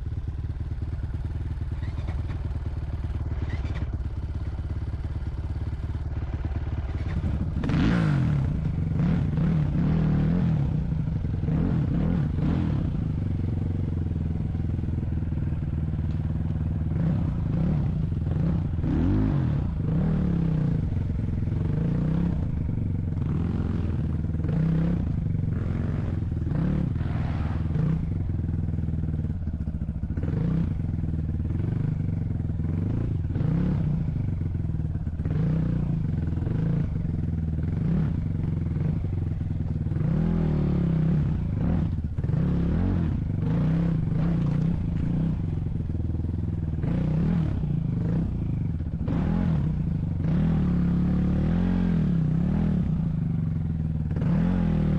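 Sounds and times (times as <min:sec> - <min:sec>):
vehicle clattering and rattling: 0:00.6 - 0:07.8
vehicle engine revving: 0:06.3 - 0:54.9.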